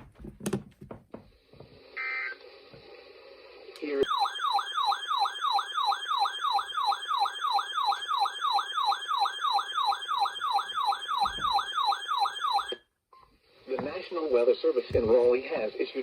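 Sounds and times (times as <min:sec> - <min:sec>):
electronic siren alert tone: 0:04.0 - 0:12.8.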